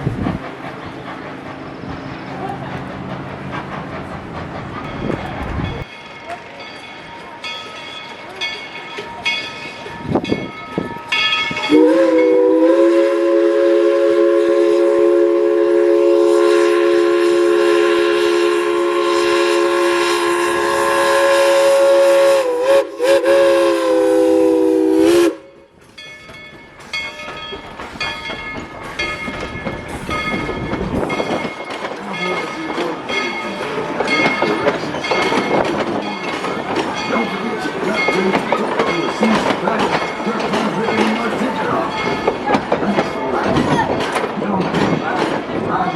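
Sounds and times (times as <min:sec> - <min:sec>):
train rattling along track: 0:00.0 - 0:45.9
steam locomotive chime whistle: 0:06.8 - 0:39.5.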